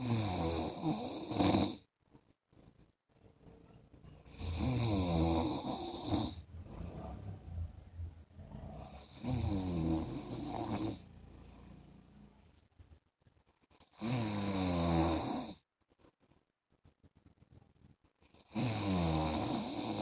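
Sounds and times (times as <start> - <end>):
man snoring: 0.0 - 1.8, 4.3 - 6.4, 8.7 - 11.0, 13.9 - 15.6, 18.4 - 20.0.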